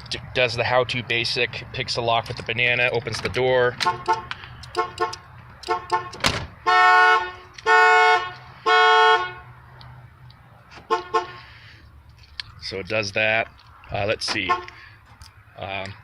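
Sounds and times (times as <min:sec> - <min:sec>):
car horn honking: 0:03.8 - 0:09.6, 0:10.8 - 0:11.5, 0:14.4 - 0:14.8.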